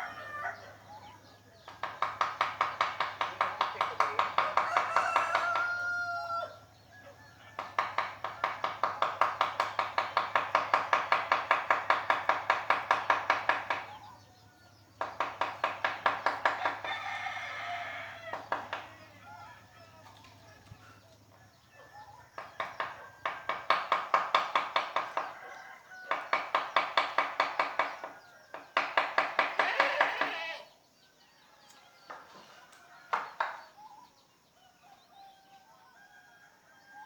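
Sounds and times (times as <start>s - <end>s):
rooster crowing: 0.0s - 0.9s, 4.0s - 9.3s, 11.8s - 19.8s, 21.4s - 26.8s, 34.7s - 37.0s.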